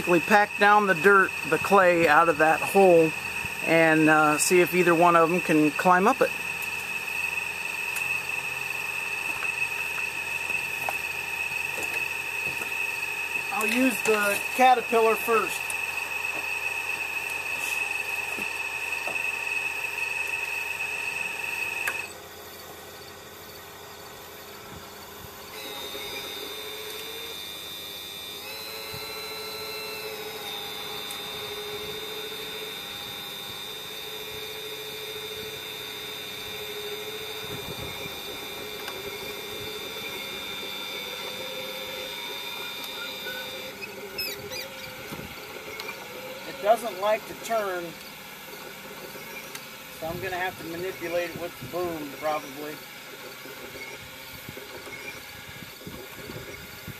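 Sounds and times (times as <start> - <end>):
toy excavator motors whining: 0.0 - 56.9.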